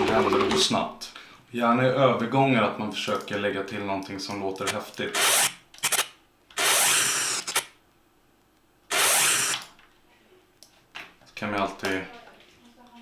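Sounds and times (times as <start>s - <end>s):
sharp clicks: 4.6s - 7.7s.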